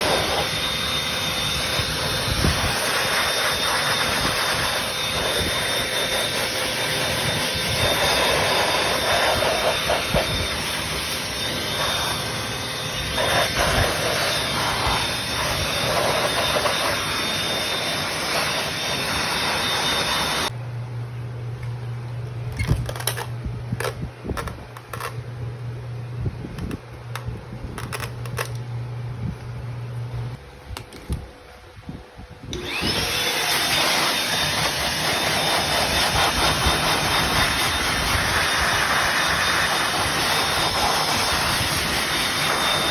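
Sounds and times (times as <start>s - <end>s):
small cleaning tool motor hiss: 0.0s - 20.5s, 32.6s - 42.9s
low steady hum: 20.5s - 32.6s.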